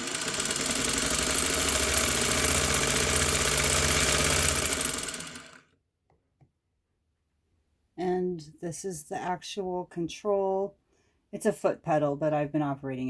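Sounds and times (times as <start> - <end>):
sewing machine running: 0.0 - 5.7.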